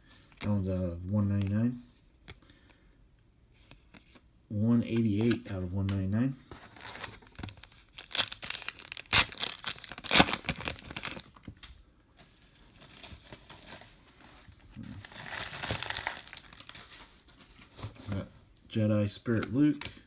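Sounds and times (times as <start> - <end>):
card pack wrapper crinkling: 4.9 - 11.7, 12.7 - 17.4.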